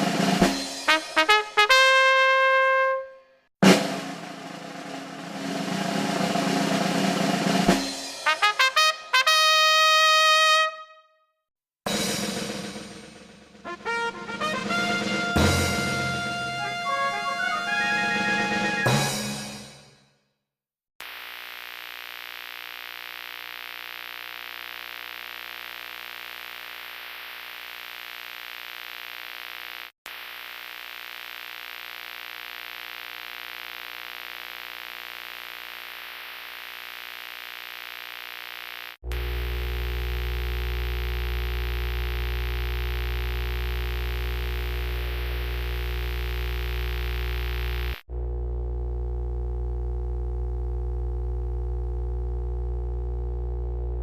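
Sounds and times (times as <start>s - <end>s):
electronic hum: 21.0s - 54.0s
deep bass drone: 39.0s - 54.0s.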